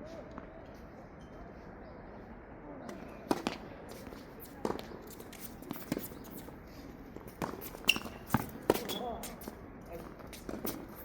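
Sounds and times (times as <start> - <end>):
tennis balls struck and bouncing: 7.2 - 9.1.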